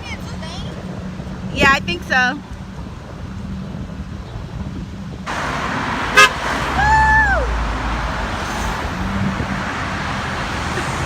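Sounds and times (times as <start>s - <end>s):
road traffic passing: 0.0s - 11.0s
vehicle engine rumbling: 0.0s - 11.0s
car horn toot: 6.1s - 6.6s
person cheering woo: 6.8s - 7.6s.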